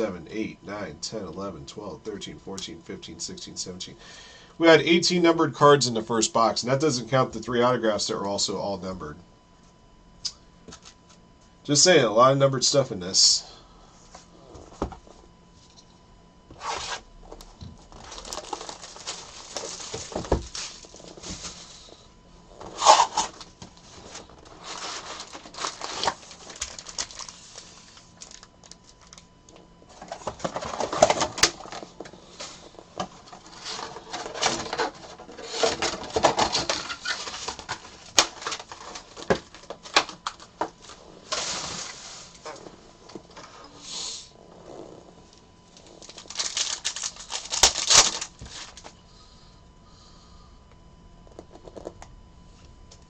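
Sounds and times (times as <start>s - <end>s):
packaging rustling: 16.6s - 22.0s, 22.6s - 42.8s, 45.8s - 49.0s
pack wrappers tearing: 18.0s - 21.4s, 22.7s - 29.2s, 45.8s - 48.9s.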